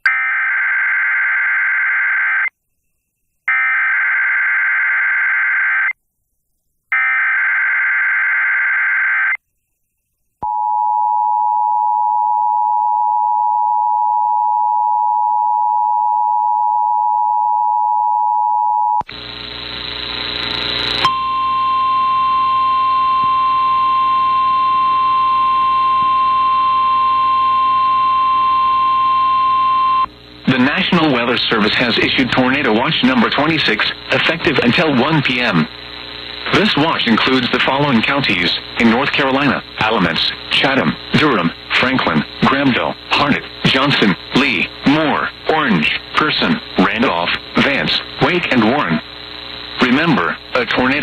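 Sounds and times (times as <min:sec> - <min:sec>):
single steady tone: 0:09.6 - 0:19.1, 0:21.0 - 0:30.1
buzzy hum: 0:19.1 - 0:51.0.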